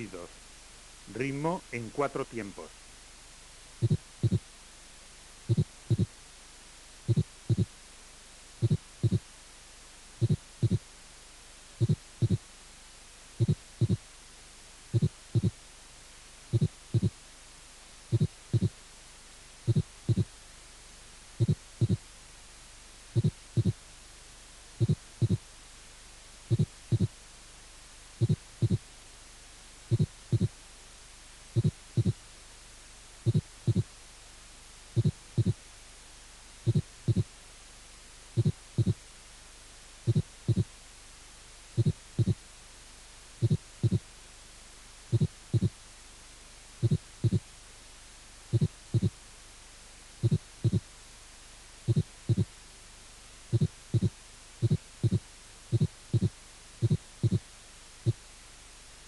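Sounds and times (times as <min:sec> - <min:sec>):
faint steady hiss: 0:00.0 - 0:59.0
heartbeat thumps: 0:03.8 - 0:04.5, 0:05.5 - 0:06.2, 0:07.1 - 0:07.8, 0:08.6 - 0:09.3, 0:10.2 - 0:10.9, 0:11.8 - 0:12.5, 0:13.4 - 0:14.1, 0:15.0 - 0:15.6, 0:16.5 - 0:17.2, 0:18.1 - 0:18.8, 0:19.7 - 0:20.4, 0:21.4 - 0:22.1, 0:23.2 - 0:23.8, 0:24.8 - 0:25.5, 0:26.5 - 0:27.2, 0:28.2 - 0:28.9, 0:29.9 - 0:30.6, 0:31.6 - 0:32.2, 0:33.2 - 0:33.9, 0:35.0 - 0:35.6, 0:36.7 - 0:37.3, 0:38.4 - 0:39.0, 0:40.1 - 0:40.7, 0:41.8 - 0:42.4, 0:43.4 - 0:44.1, 0:45.1 - 0:45.8, 0:46.8 - 0:47.5, 0:48.5 - 0:49.2, 0:50.2 - 0:50.9, 0:51.9 - 0:52.6, 0:53.5 - 0:58.3.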